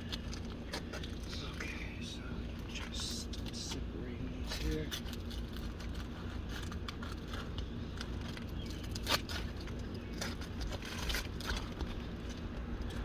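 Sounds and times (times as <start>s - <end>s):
shingles scraping and crackling: 4.4s - 13.0s.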